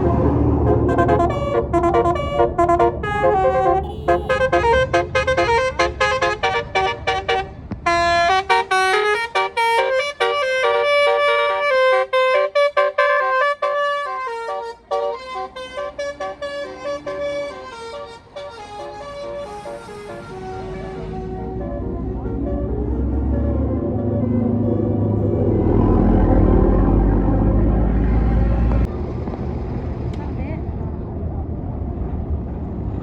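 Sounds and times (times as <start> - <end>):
musical bus horn melody: 0.0 - 25.9
bus engine rumbling: 0.0 - 33.0.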